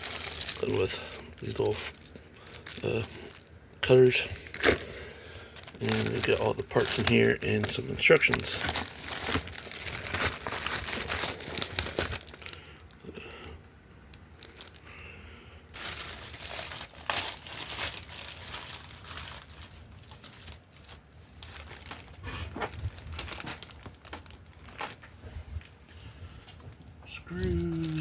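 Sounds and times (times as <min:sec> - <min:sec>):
packaging crinkling and rustling: 0:00.0 - 0:13.0, 0:14.1 - 0:15.0, 0:15.8 - 0:28.0.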